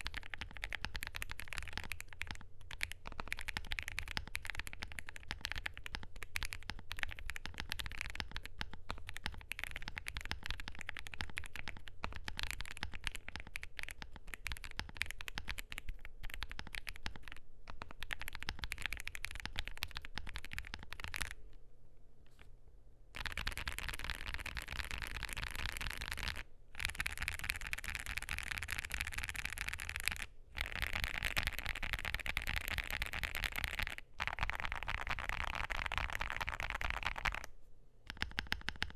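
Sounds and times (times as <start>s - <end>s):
mechanical keyboard typing: 0.0s - 21.4s, 23.2s - 37.5s, 38.1s - 38.9s.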